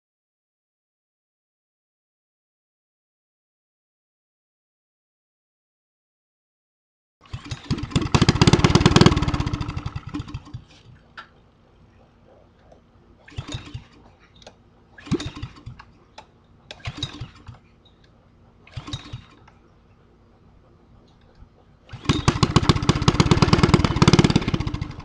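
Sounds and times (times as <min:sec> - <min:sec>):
go-kart engine cranking and firing: 0:07.2 - 0:11.3, 0:13.2 - 0:17.7, 0:18.6 - 0:19.6, 0:21.9 - 0:25.0.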